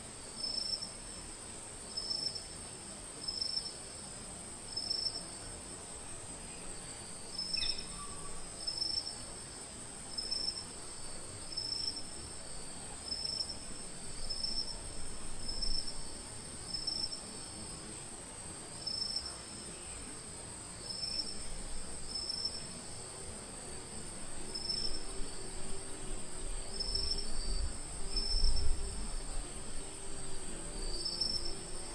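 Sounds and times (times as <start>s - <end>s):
insects chirring drone: 0.0s - 31.9s
pulsing insect call: 6.5s - 9.2s.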